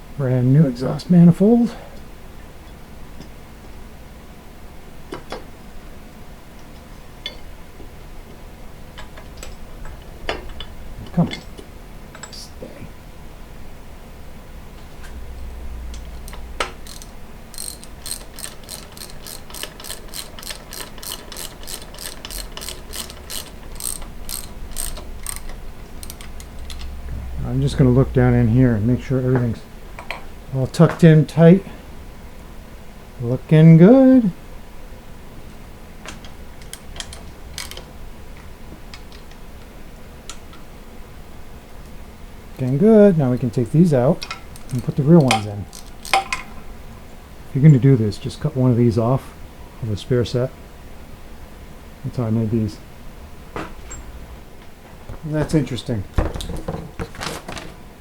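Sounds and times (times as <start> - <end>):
faint low hum: 0.0 - 57.8
ratchet wrench clicking: 16.0 - 27.0, 36.6 - 37.9, 44.2 - 46.5.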